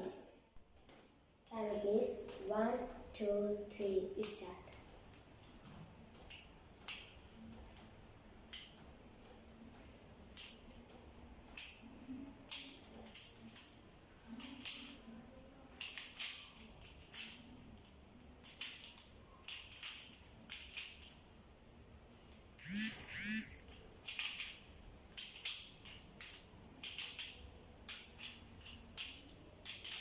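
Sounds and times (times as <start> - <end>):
plastic puzzle clicking: 4.2 - 7.9, 10.3 - 10.9, 11.5 - 15.2, 15.8 - 21.2, 22.6 - 30.0.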